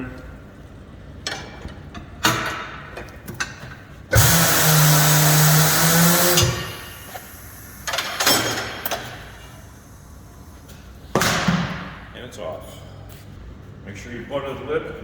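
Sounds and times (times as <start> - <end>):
tire changer motor humming: 4.1 - 11.1.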